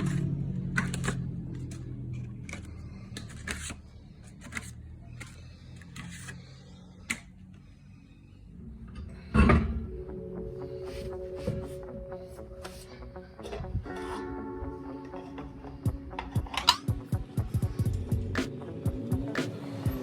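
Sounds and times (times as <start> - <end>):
background music: 9.2 - 20.0.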